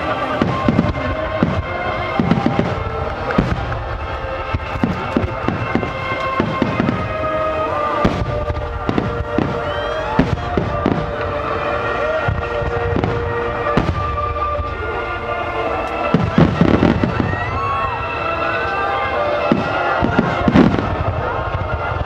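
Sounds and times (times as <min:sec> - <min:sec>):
fireworks bursting: 0:00.0 - 0:22.0
music of long held notes: 0:00.0 - 0:22.0.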